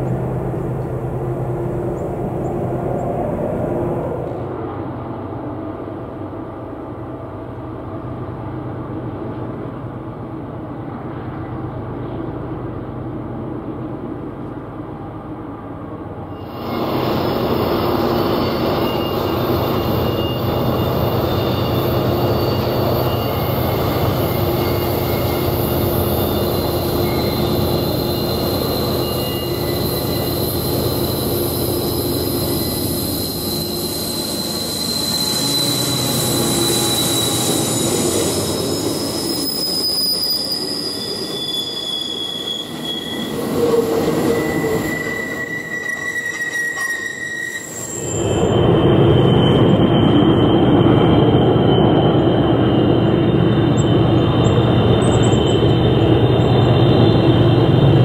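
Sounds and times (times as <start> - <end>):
train wheels rumbling on rail: 0.0 - 58.0
wheel flanges squealing: 16.4 - 58.0.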